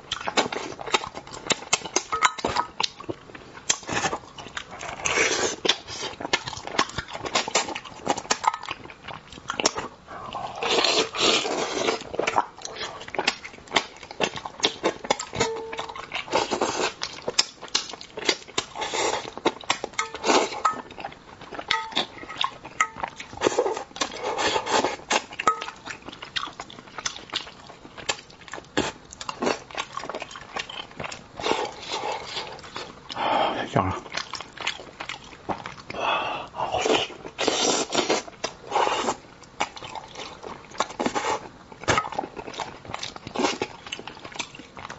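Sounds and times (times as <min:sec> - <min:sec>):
close-miked eating and chewing: 0:00.0 - 0:44.9.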